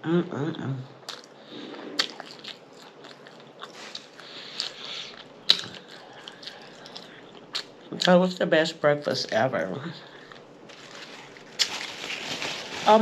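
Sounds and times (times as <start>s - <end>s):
person chewing food: 1.0s - 8.0s.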